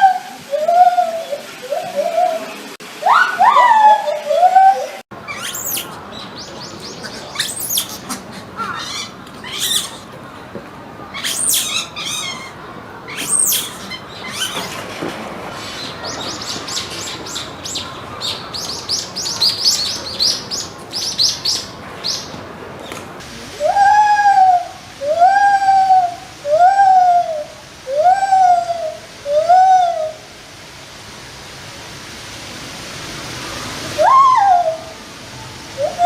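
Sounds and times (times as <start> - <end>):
monkey squeals: 5.3 - 6.0, 7.0 - 10.1, 11.2 - 14.8
monkey chirps: 5.3 - 10.1, 11.1 - 14.8.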